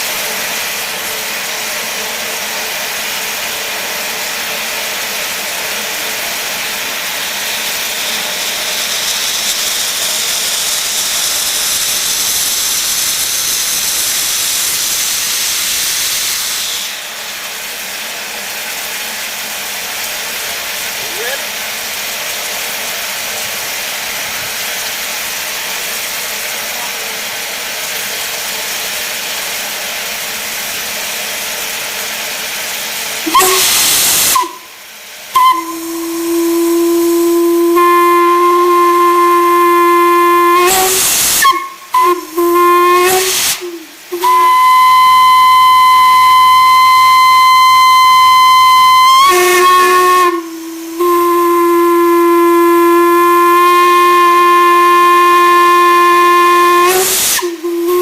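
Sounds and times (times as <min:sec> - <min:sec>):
loud burst of steam: 0:00.0 - 0:58.0
steam hissing: 0:00.0 - 0:58.0
steam whistle blowing: 0:06.1 - 0:17.2, 0:33.2 - 0:58.0.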